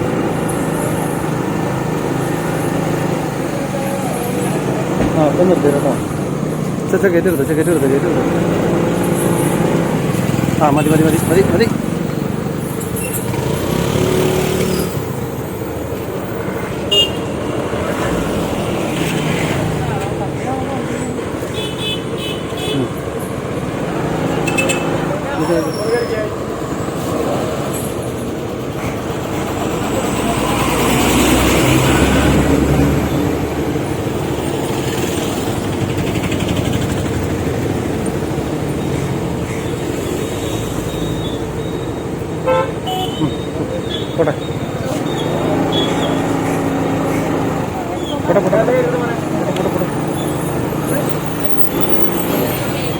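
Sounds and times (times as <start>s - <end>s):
traffic and road noise: 0.0s - 52.9s
vehicle engine running: 23.0s - 41.0s, 43.0s - 52.9s.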